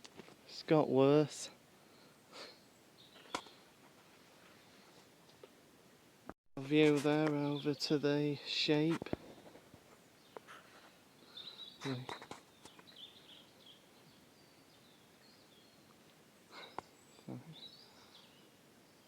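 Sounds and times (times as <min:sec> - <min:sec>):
faint bird chirping: 0:01.8 - 0:03.8, 0:04.5 - 0:05.2, 0:07.3 - 0:08.9, 0:09.9 - 0:19.0
short low vocal sounds: 0:16.6 - 0:17.7.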